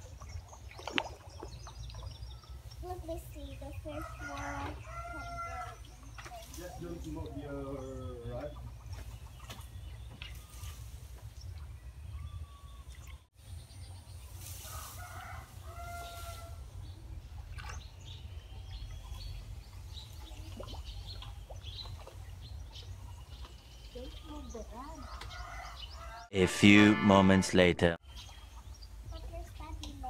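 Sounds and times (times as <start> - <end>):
chickens clucking: 3.6 - 10.3
rooster-like calls: 4.0 - 5.9.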